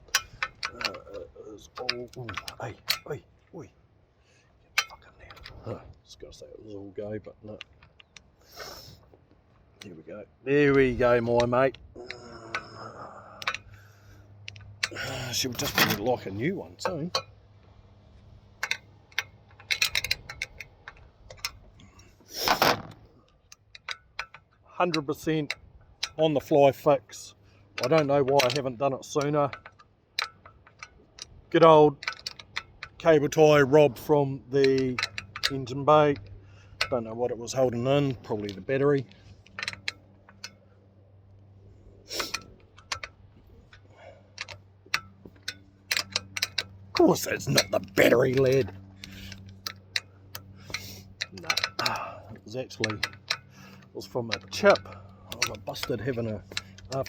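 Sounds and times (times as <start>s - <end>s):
faint steady low hum: 0.0s - 57.0s
clicks and taps of tools: 23.5s - 26.2s, 42.2s - 57.0s.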